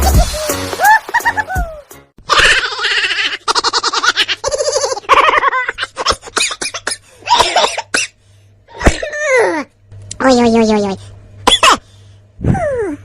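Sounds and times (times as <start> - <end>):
rapid rhythmic laughter: 0.0 - 7.1.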